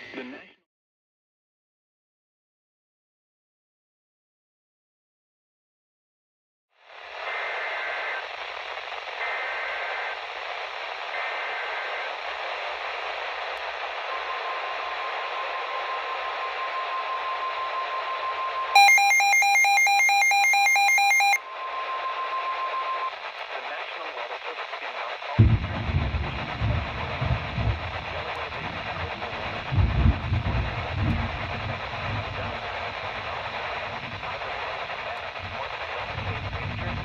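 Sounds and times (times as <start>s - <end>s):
radio static: 6.9s - 37.0s
data header bursts: 14.1s - 23.1s, 25.4s - 37.0s
electronic beeping: 14.1s - 23.1s.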